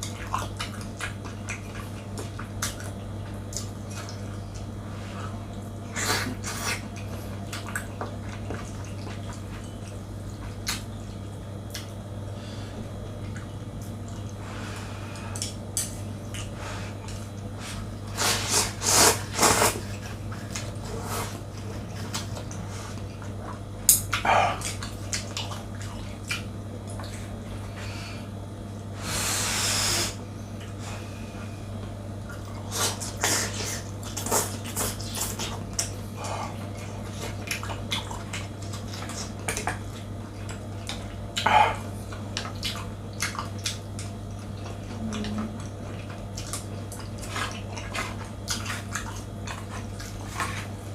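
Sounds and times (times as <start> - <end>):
slurping and chewing noodles: 0.0 - 10.8, 16.3 - 23.3, 32.3 - 50.8
steady low hum: 0.0 - 50.9.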